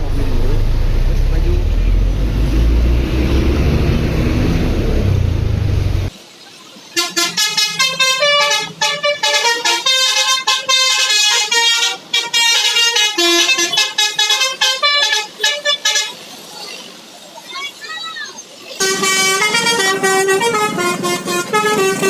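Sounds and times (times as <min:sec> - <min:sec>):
multi-trumpet bus horn tune: 0:07.0 - 0:16.2, 0:18.8 - 0:22.0.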